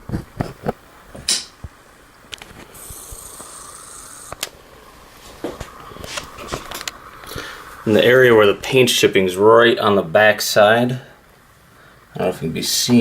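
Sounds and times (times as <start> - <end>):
high scraping hiss: 0.0 - 13.0
short rustle: 5.0 - 7.9.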